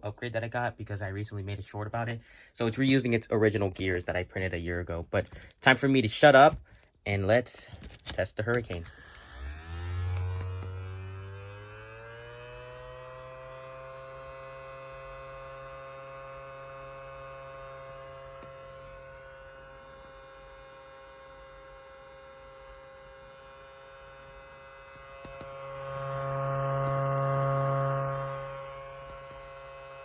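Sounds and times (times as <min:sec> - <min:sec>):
siren wailing: 0:09.0 - 0:30.0.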